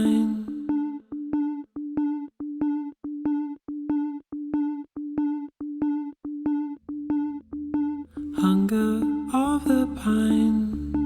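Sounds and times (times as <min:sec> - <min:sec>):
synthesizer pulsing short notes: 0:06.7 - 0:11.0
low bass: 0:06.8 - 0:11.0.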